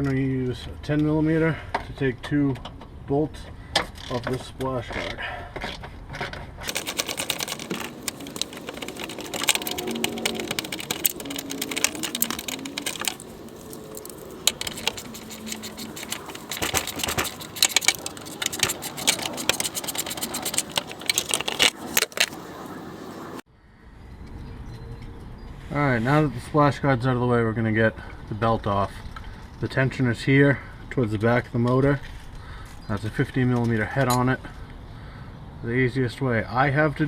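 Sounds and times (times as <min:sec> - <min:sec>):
metal tools clinking: 0:06.7 - 0:22.4
socket wrench clicking: 0:06.7 - 0:22.4.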